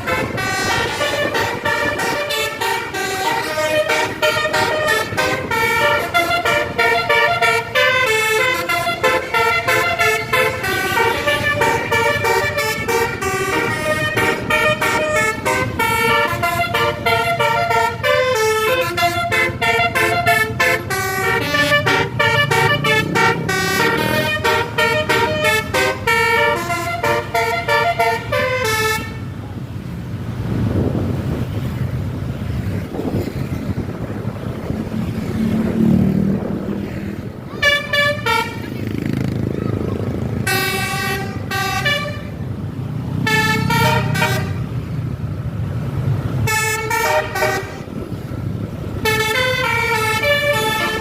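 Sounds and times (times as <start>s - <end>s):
multi-tone musical bus horn: 0.0s - 29.4s, 37.3s - 39.1s, 39.7s - 45.0s, 46.3s - 48.3s, 48.9s - 51.0s.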